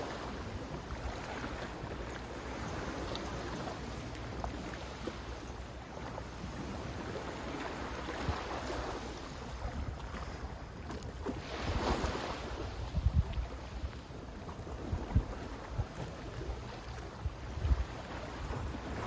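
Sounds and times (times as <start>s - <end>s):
sea waves washing in: 0.0s - 19.0s
wind buffeting microphone: 7.8s - 19.0s.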